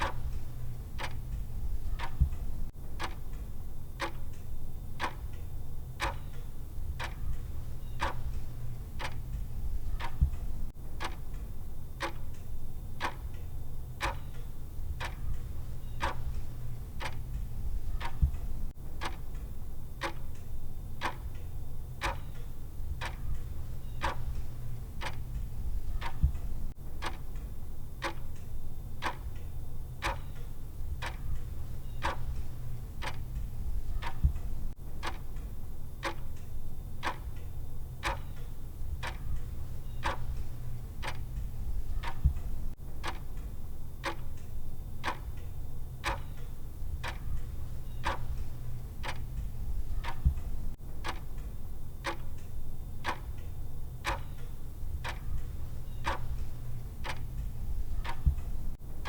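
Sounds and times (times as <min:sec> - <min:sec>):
low steady hum: 0:00.0 - 0:59.0
countdown timer ticking: 0:38.0 - 0:43.4, 0:45.0 - 0:58.8.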